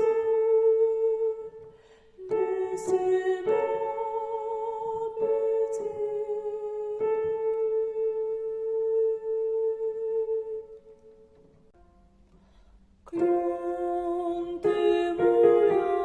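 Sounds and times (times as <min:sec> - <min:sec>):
high voice singing slow song: 0:13.1 - 0:16.0.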